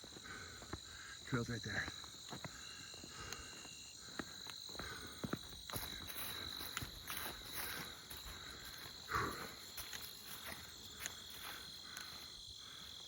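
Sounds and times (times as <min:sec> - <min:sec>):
crickets and insects trilling: 0:00.0 - 0:13.0
soft footstep clicks: 0:09.8 - 0:12.2.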